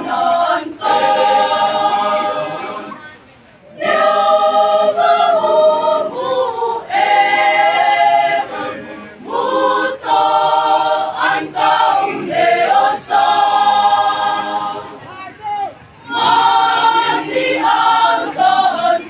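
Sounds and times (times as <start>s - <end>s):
choir singing: 0.0s - 3.0s, 3.7s - 15.0s, 16.0s - 19.0s.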